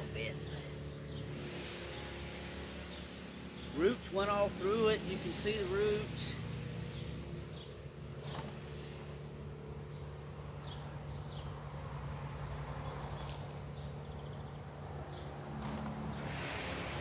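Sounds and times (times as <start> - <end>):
soil rustling: 7.6 - 9.2, 12.2 - 17.0.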